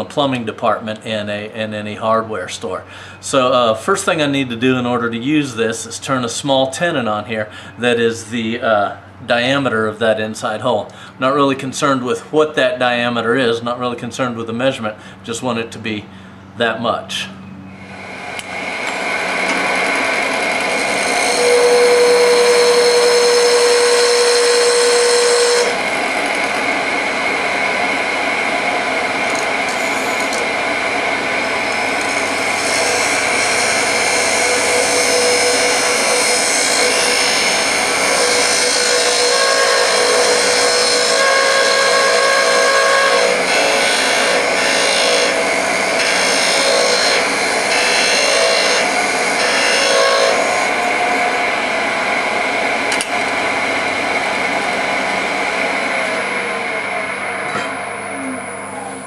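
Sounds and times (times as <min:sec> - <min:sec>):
wood lathe whine: 0:17.8 - 0:59.0
tool cutting wood ringing tone: 0:20.6 - 0:25.9, 0:31.6 - 0:51.0.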